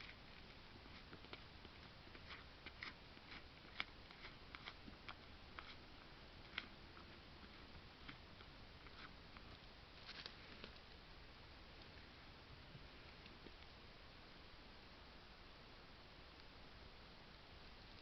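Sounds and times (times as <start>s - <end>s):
deer chewing with crunching clicks: 0.1s - 5.8s.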